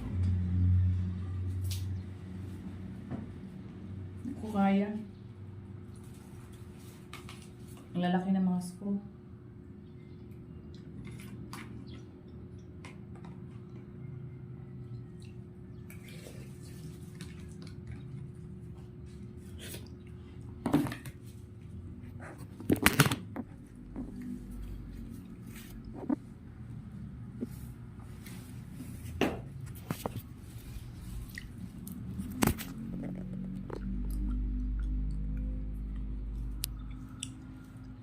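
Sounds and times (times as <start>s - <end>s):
steady low hum: 7.8s - 38.0s.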